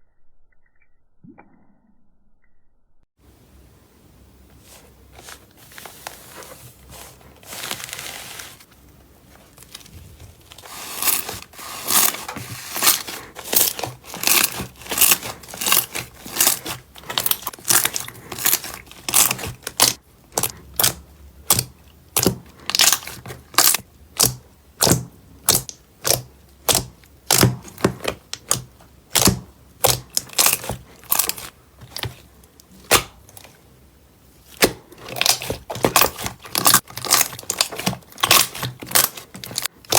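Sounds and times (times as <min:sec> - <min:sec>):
slime crackling and popping: 0:10.5 - 0:32.2, 0:34.5 - 0:39.9.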